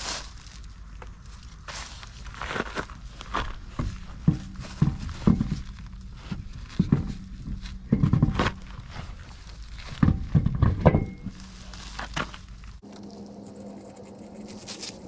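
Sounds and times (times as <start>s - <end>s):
quiet steady hum: 0.3s - 15.0s
sharp knocks and clatters: 6.7s - 8.6s, 9.9s - 11.4s.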